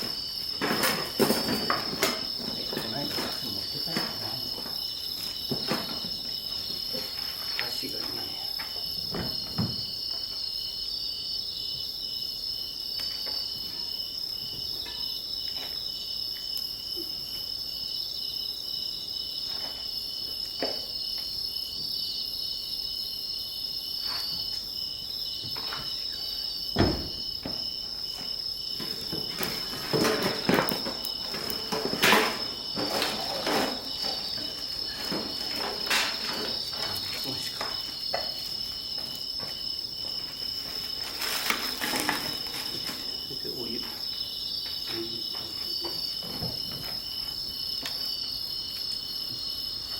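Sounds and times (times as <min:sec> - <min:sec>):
insect chorus chirping: 0:00.0 - 0:49.9
sharp thump: 0:26.8 - 0:27.2.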